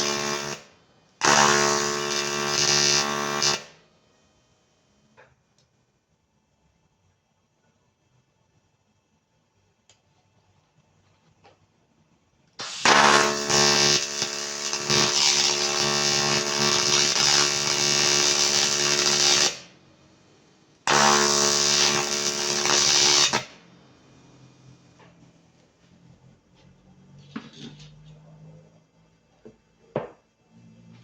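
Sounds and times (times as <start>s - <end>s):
welding arc buzzing: 0.0s - 3.8s, 12.6s - 19.8s, 20.8s - 23.6s.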